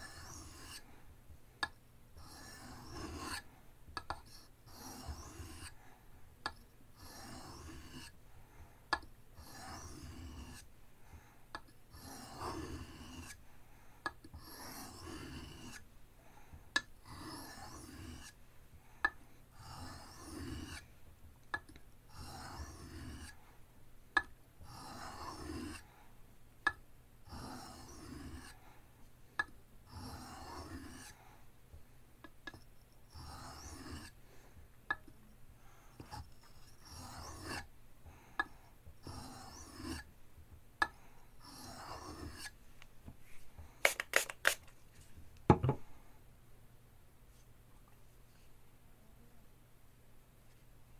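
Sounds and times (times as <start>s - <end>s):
knife scraping on whetstone: 0.0s - 0.8s, 2.2s - 3.4s, 4.2s - 5.7s, 7.0s - 8.2s, 9.4s - 10.7s, 11.9s - 13.4s, 14.4s - 15.8s, 17.1s - 18.4s, 19.6s - 20.8s, 22.1s - 23.4s, 24.7s - 25.8s, 27.3s - 28.6s, 29.9s - 31.2s, 33.1s - 34.2s, 36.0s - 37.7s, 39.0s - 40.1s, 41.4s - 42.6s.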